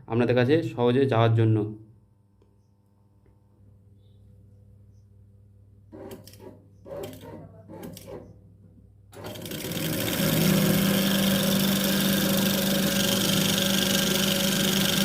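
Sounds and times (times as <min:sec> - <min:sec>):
coil winding machine whirring: 0:09.2 - 0:15.0.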